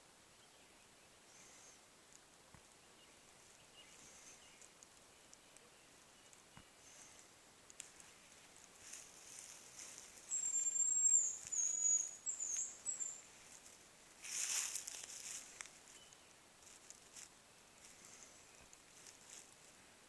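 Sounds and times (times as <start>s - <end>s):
bird whistling song: 10.3s - 13.2s
brief rustle: 13.5s - 17.3s.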